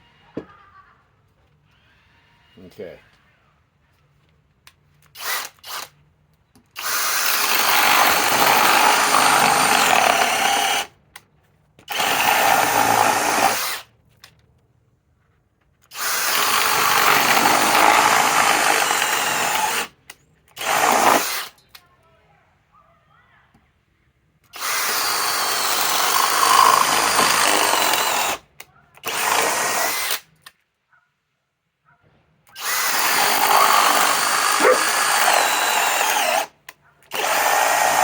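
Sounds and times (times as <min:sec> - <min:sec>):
cordless hammer drill boring holes: 0:05.1 - 0:06.0, 0:06.8 - 0:10.9, 0:11.8 - 0:13.9, 0:15.9 - 0:21.6, 0:24.4 - 0:30.5, 0:32.5 - 0:38.0.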